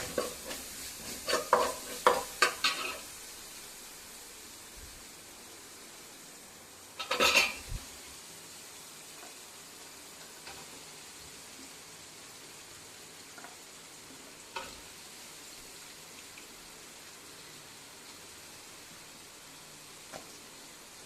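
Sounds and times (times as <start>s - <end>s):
spoon clattering against pan: 0.0s - 3.0s
spoon stirring food: 0.0s - 3.0s
food sizzling in a pan: 0.0s - 21.0s.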